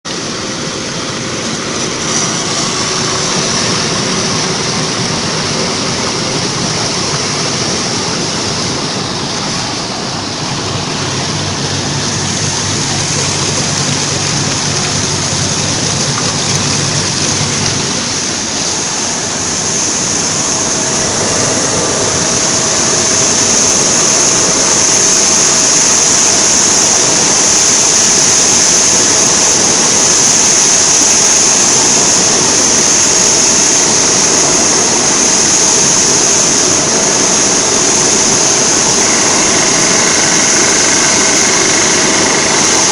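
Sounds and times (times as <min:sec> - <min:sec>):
machine hum: 0:00.1 - 0:42.9
rushing water: 0:00.1 - 0:42.9.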